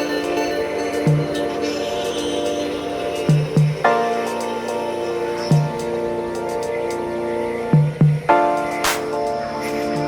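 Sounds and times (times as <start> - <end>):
sustained music chords: 0.0 - 10.0.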